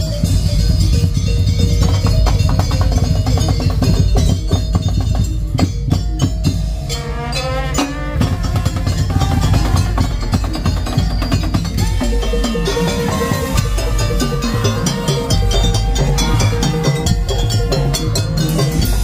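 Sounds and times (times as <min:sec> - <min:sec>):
drums and slit drums playing: 0:00.0 - 0:19.0
heavy bass: 0:00.0 - 0:19.0
wavering melody: 0:00.0 - 0:19.0.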